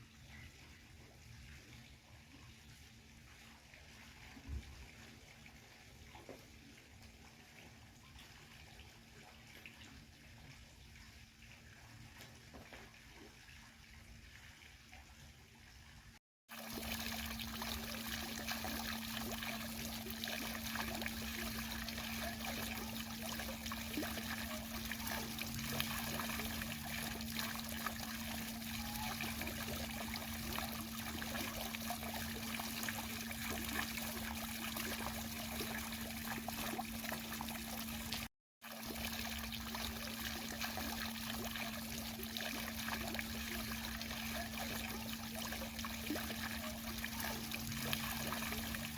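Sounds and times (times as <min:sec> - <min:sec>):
fountain water splashing: 0:16.5 - 0:48.9
low hum: 0:16.8 - 0:38.3.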